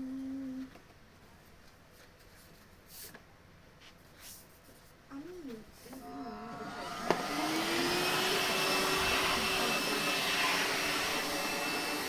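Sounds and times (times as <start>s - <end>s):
vacuum cleaner motor running: 6.0s - 12.0s.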